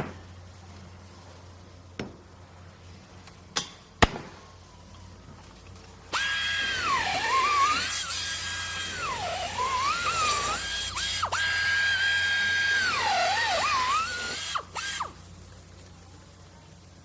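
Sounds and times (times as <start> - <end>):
electric power tool whining: 6.1 - 15.2.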